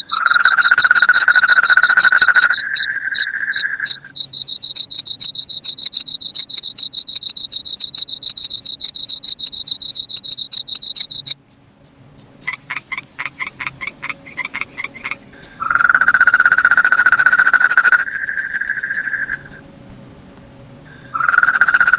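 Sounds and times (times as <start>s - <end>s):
insect high chirping trill: 0.0s - 13.6s, 14.4s - 19.6s, 20.9s - 21.9s
insect buzzing call: 0.0s - 19.7s, 20.9s - 21.9s
insect pulsed calls: 0.0s - 19.8s, 20.9s - 21.9s.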